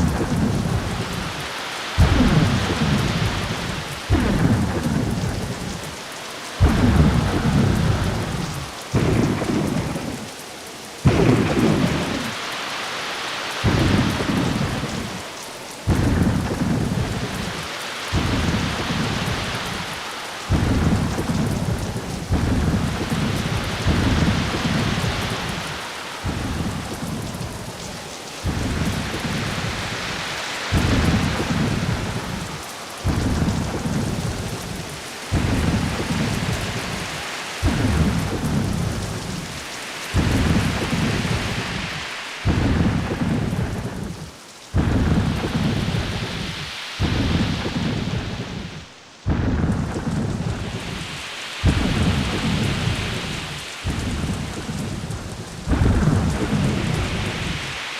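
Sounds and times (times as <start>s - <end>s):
low thunder rumbles: 0.0s - 12.8s, 13.5s - 57.9s
steady rain: 0.0s - 57.9s.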